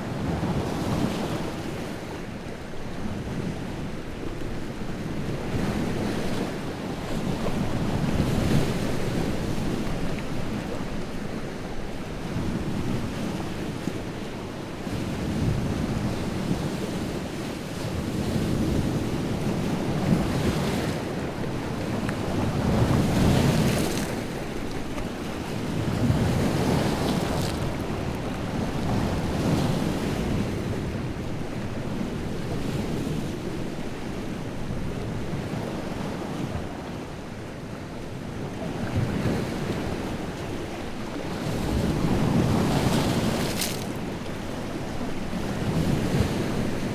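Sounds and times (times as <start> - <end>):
waves breaking on shore: 15.1 - 46.9.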